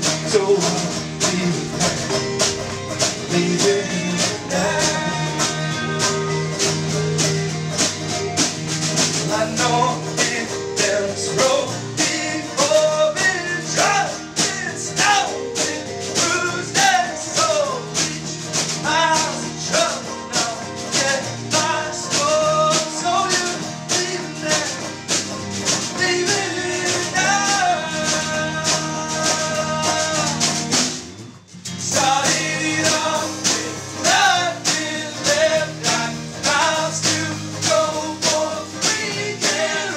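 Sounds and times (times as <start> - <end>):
person singing: 0.0 - 7.2, 9.2 - 30.8, 31.9 - 39.9
guitar: 0.0 - 39.9
steady drum beat: 0.0 - 39.9.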